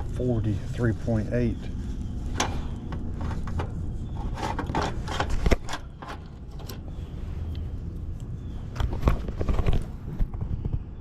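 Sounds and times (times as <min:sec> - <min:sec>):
steady low rumble: 0:00.0 - 0:11.0
handling clicks and knocks: 0:02.4 - 0:07.0.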